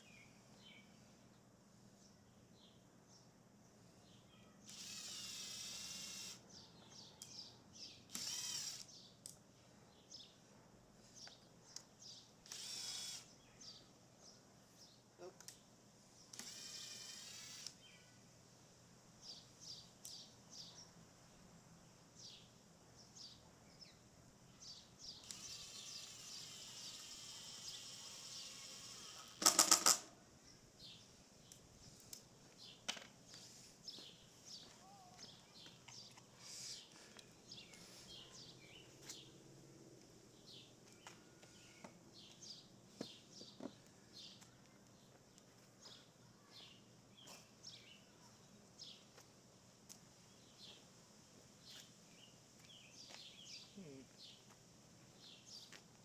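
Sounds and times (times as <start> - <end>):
small birds chirping: 0.0 - 18.3, 19.2 - 29.4, 30.4 - 39.4, 40.0 - 56.0
quiet hissing whir: 3.7 - 6.5, 7.8 - 10.0, 11.0 - 20.2, 21.0 - 29.4
cordless drill driving screw: 4.6 - 6.4, 8.1 - 8.9, 12.4 - 13.3, 16.3 - 17.8, 25.2 - 30.0.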